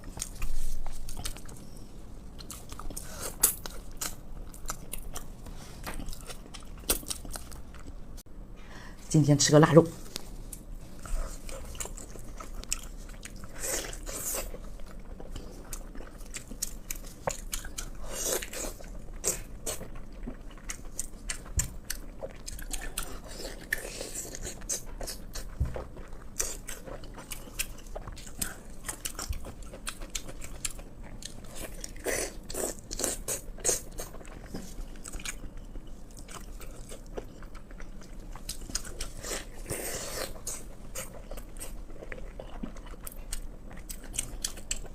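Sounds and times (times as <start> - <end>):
person biting and chewing meat: 10.5 - 35.4, 36.2 - 44.9.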